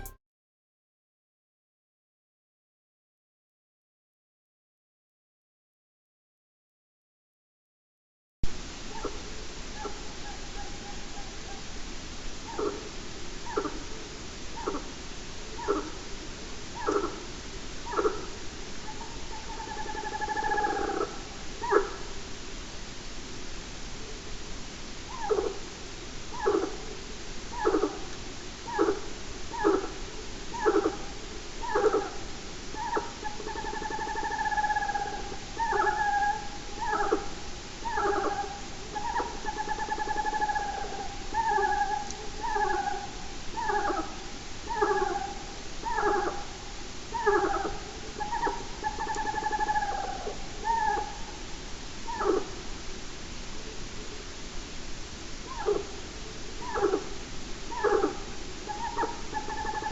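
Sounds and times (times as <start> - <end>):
animal calling loudly: 47.2 - 51.2, 56.6 - 57.0, 57.7 - 59.9.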